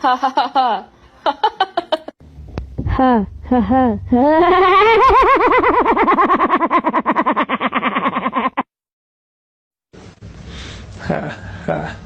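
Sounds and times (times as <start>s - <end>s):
person laughing: 0.0s - 2.2s, 2.9s - 8.7s.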